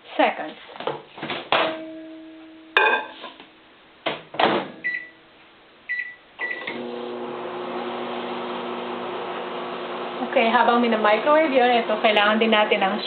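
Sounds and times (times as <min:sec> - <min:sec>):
keypad beeps: 0:04.8 - 0:05.2
microwave oven humming: 0:06.4 - 0:10.7.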